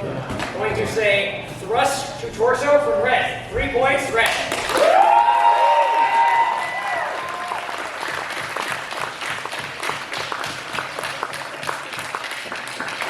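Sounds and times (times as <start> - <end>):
crowd applauding: 4.5 - 13.0.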